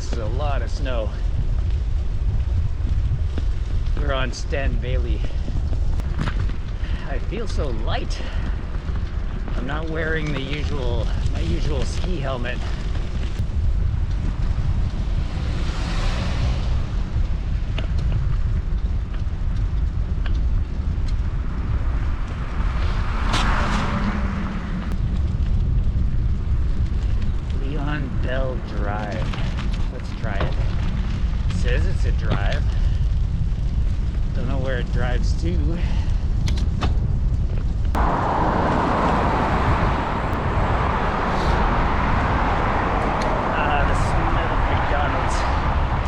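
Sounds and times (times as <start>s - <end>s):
wind rumbling on microphone: 0.0s - 46.0s
tyres hissing on wet pavement: 15.0s - 17.2s, 34.7s - 36.3s, 38.0s - 46.0s.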